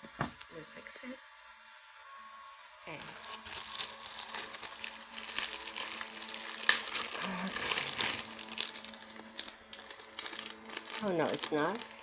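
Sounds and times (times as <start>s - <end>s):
packaging crinkling and rustling: 2.9s - 12.0s.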